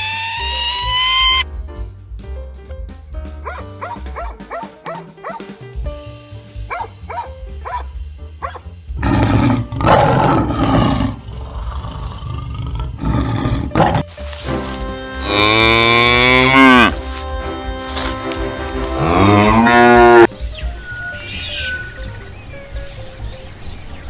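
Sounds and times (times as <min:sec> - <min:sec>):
rough bellowing animal calls: 0:00.0 - 0:01.4, 0:06.7 - 0:14.1, 0:15.2 - 0:17.0, 0:18.9 - 0:22.3
background music: 0:00.0 - 0:24.0
cow mooing: 0:09.0 - 0:14.1, 0:15.2 - 0:17.2, 0:18.8 - 0:20.3.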